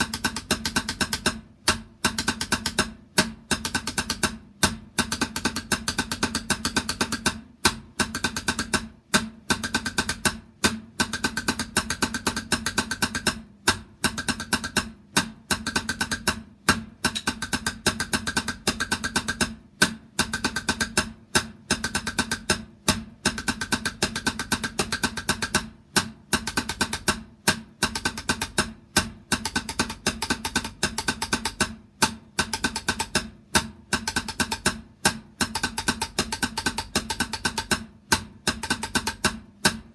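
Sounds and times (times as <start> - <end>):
rapid drumming: 0.0 - 39.9.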